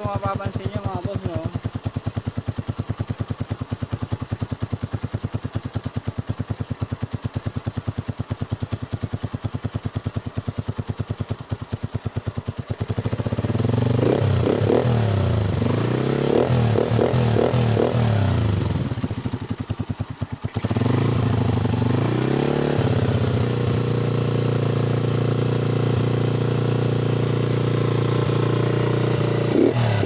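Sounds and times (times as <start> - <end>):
motorcycle engine idling and revving: 0.0 - 30.0.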